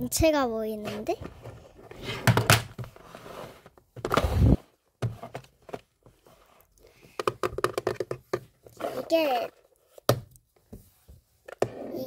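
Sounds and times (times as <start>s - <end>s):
rustling scrape: 2.9s - 6.7s, 8.8s - 9.5s
boxes and lids clicking and knocking: 7.1s - 9.2s.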